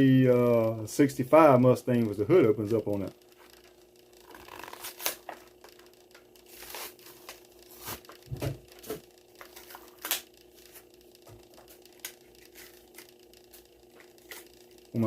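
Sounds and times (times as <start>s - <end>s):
packaging being torn open: 4.3s - 5.4s, 9.5s - 10.3s.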